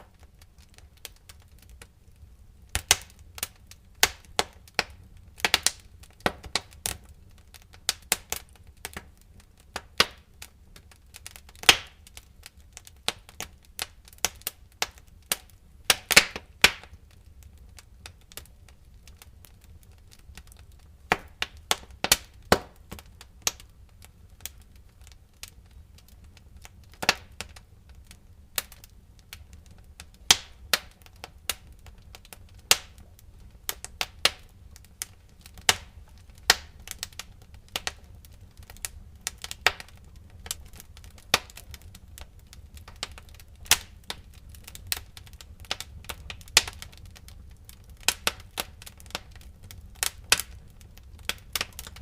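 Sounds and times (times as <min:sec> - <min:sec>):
wood fire crackling: 0:00.0 - 0:52.0.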